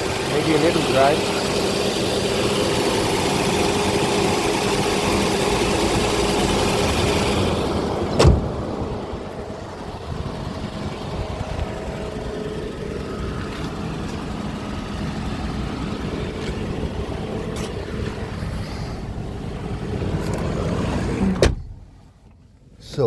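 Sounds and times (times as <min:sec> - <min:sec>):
car engine idling: 0:00.0 - 0:23.0
sharp thump: 0:08.1 - 0:08.6.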